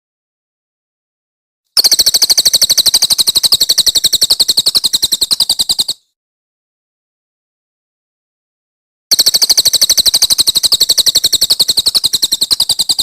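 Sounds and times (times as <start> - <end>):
songbird rapid trill: 1.8 - 6.2, 9.1 - 13.0.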